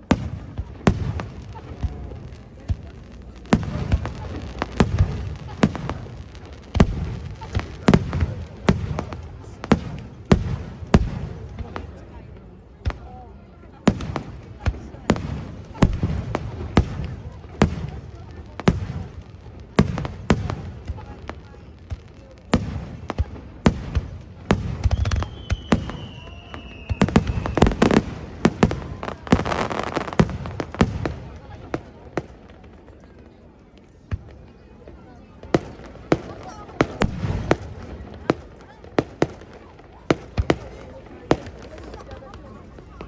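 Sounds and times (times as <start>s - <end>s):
fireworks bursting overhead: 0.0s - 43.0s
falling firework whistle: 24.9s - 28.0s.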